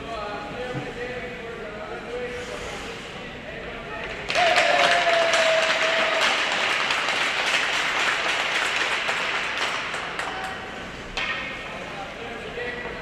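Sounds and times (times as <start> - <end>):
spectators clapping and cheering: 4.2 - 10.6.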